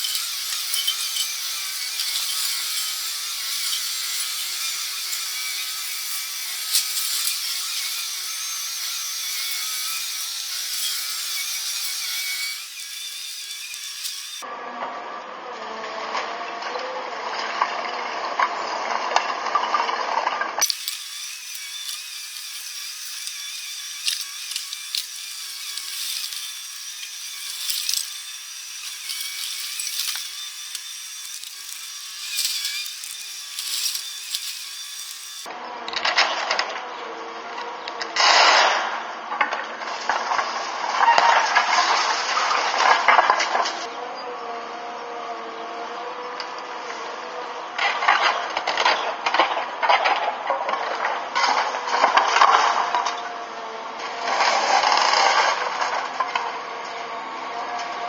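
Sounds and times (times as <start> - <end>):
cracking and clattering: 20.6 - 35.5
loud crunching bursts: 20.6 - 35.5.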